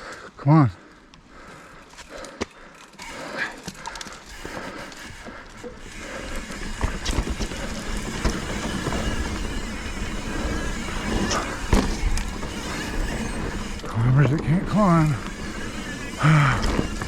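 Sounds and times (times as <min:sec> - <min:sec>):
bike tyre noise on dirt: 0:00.8 - 0:17.0
bike knocks and rattles: 0:05.5 - 0:17.0.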